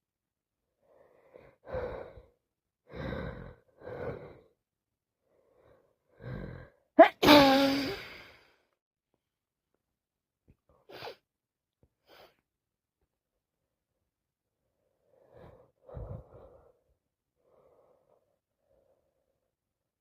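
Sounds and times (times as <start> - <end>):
woman sneezing: 7.0 - 8.0.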